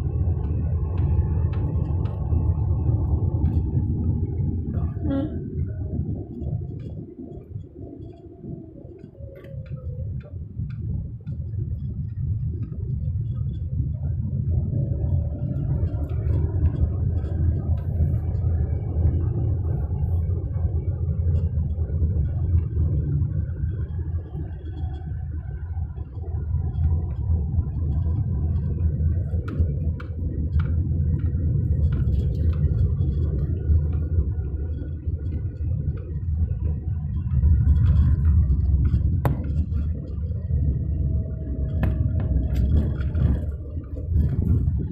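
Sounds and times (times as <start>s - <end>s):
car engine running: 26.8s - 44.9s.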